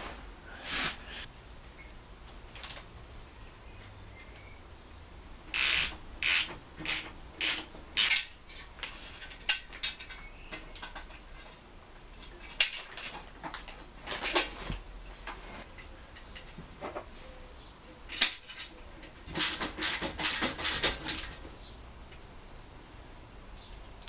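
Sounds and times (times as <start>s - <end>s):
scraping on metal parts: 5.5s - 17.4s, 18.0s - 21.5s.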